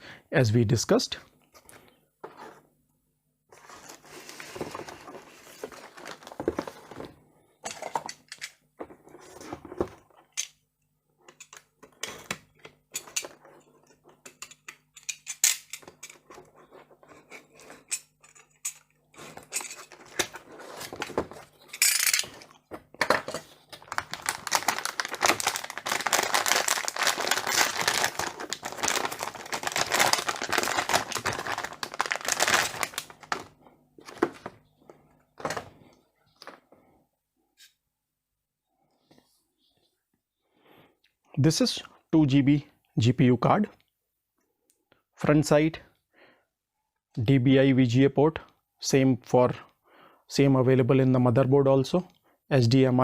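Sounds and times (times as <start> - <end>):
knocks and scrapes of handling: 1.5 - 2.7, 3.5 - 10.4, 15.8 - 23.8
packaging rustling: 3.6 - 7.1, 19.2 - 34.6.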